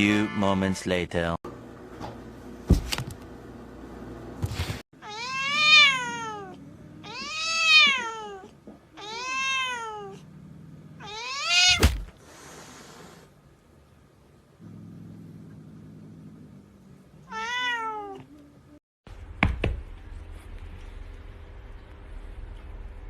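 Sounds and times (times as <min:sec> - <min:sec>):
cat meowing: 0:05.0 - 0:10.2, 0:11.0 - 0:12.0, 0:17.2 - 0:18.3.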